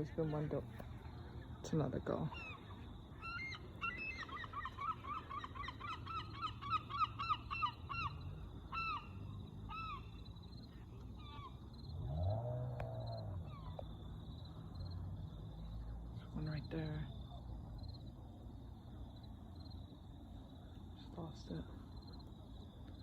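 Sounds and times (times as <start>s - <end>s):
gull calling: 2.2s - 10.3s.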